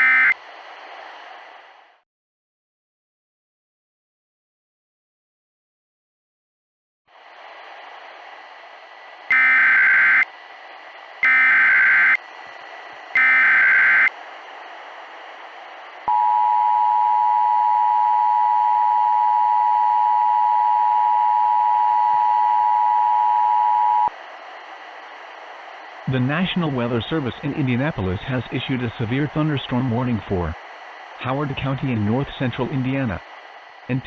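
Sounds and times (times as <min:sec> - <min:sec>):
radio hiss: 0:24.2 - 0:34.0.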